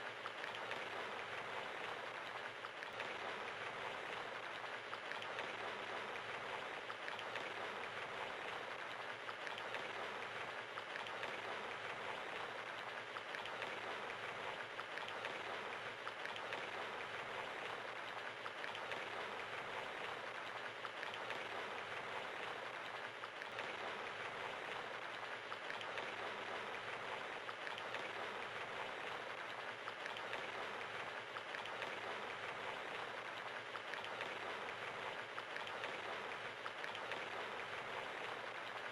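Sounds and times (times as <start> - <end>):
rain pattering: 0.0 - 38.9.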